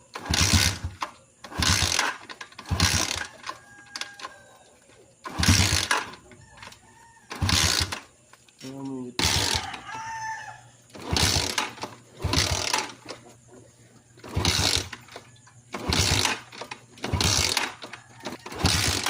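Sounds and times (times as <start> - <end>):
motorcycle engine cranking: 0.0 - 4.4, 5.2 - 10.1, 10.9 - 13.6, 14.2 - 19.0.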